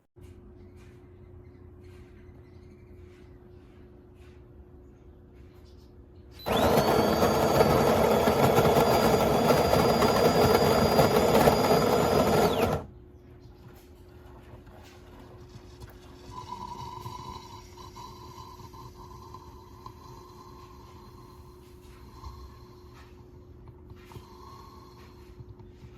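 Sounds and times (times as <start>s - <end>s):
espresso machine buzzing: 6.4s - 12.9s.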